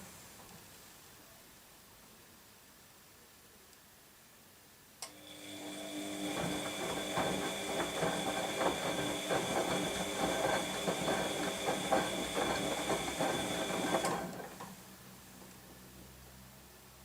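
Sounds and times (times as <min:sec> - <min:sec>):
washing machine motor whine: 0:05.1 - 0:14.8
washing machine clattering: 0:05.5 - 0:14.8.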